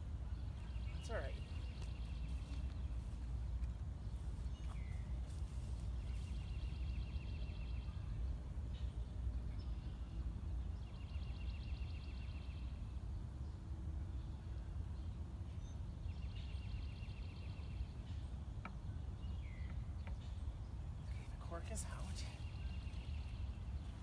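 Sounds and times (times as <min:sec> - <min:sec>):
steady low rumble: 0:00.0 - 0:11.5.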